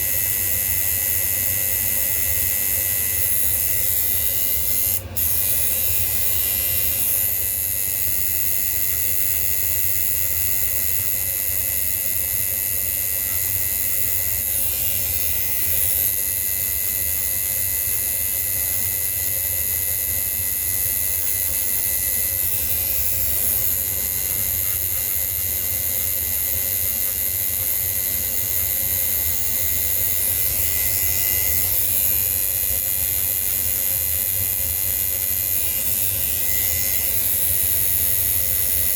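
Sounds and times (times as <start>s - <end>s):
small motor running: 0.0s - 38.9s.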